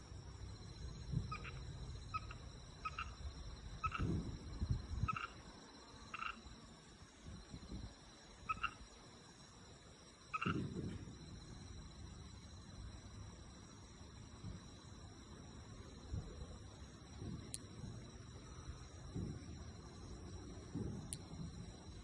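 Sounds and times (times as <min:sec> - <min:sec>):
frogs croaking: 0:00.0 - 0:13.5
high insect trill: 0:00.0 - 0:22.0.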